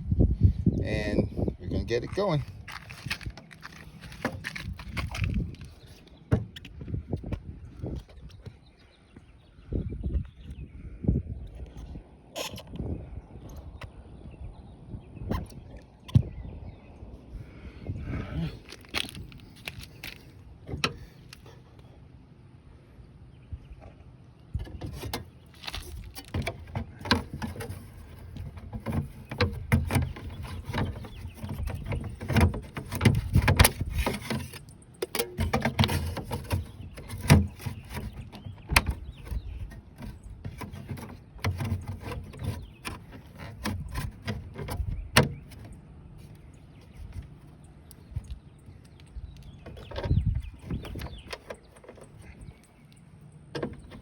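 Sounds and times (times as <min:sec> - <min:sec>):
metal latch clicks and knocks: 0:49.3 - 0:54.0.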